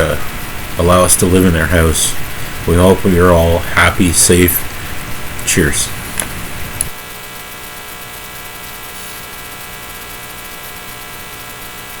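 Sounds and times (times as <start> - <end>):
electrical hum: 0.0 - 12.0
click: 6.2 - 7.0.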